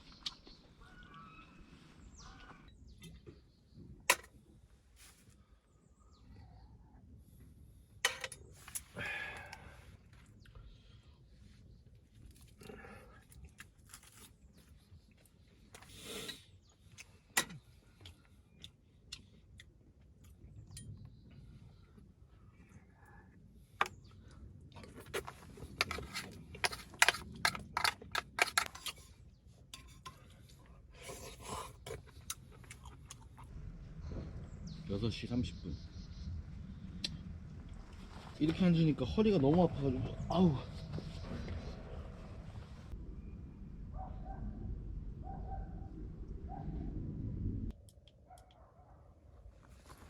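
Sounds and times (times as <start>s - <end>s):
cookware and utensils clinking: 8.1s - 8.4s, 29.7s - 30.3s.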